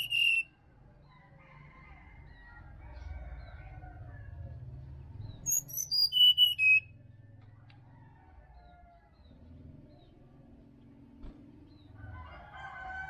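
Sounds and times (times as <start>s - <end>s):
songbird high whistled notes: 0.0s - 0.5s, 5.5s - 6.8s.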